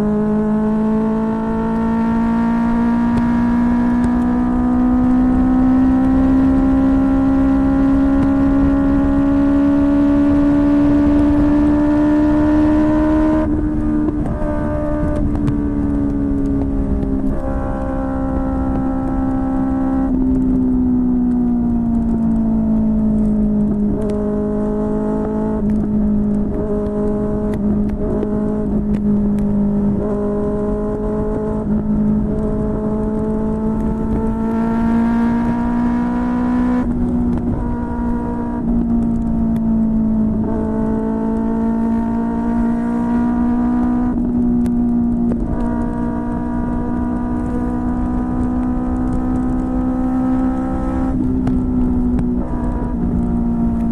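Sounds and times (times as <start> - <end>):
motorcycle engine revving: 0.0 - 53.9.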